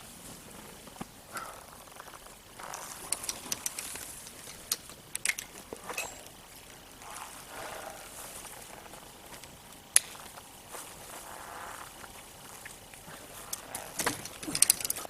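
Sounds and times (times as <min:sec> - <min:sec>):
rope rustling on bark: 0:00.0 - 0:15.0
ascenders clicking on rope: 0:01.3 - 0:06.4, 0:11.2 - 0:15.0.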